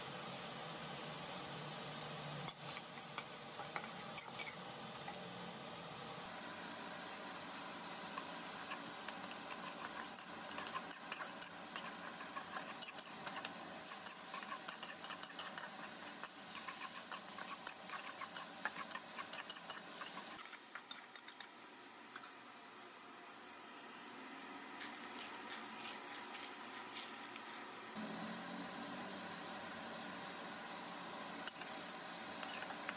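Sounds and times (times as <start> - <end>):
food sizzling in a hot pan: 0.0 - 21.8.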